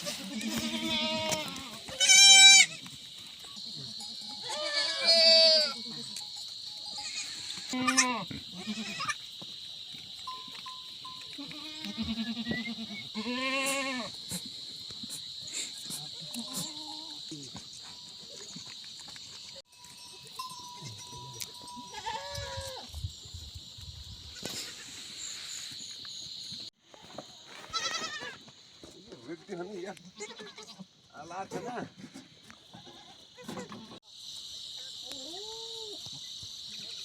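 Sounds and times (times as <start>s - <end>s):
goats bleating: 0.0s - 2.9s, 3.6s - 6.2s, 6.9s - 9.2s, 11.4s - 14.1s, 20.8s - 22.9s, 27.6s - 28.4s, 29.3s - 30.9s
insects droning: 0.0s - 37.0s.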